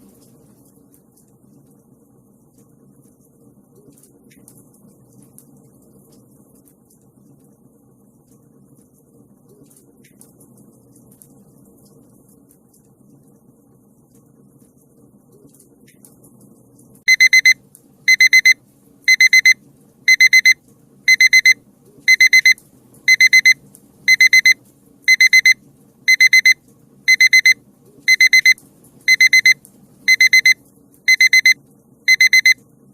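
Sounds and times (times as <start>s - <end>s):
timer alarm beeping: 17.1s - 32.6s.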